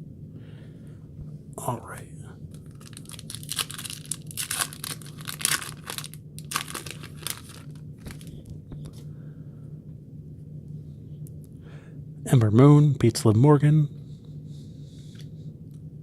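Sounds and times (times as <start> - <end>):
wrapper tearing and crinkling: 2.5 - 8.3
cards rustling: 2.5 - 8.4.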